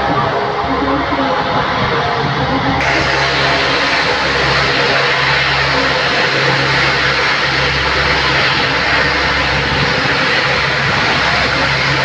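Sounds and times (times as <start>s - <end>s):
low steady hum: 0.0s - 12.0s
military aircraft engine running: 0.0s - 12.0s.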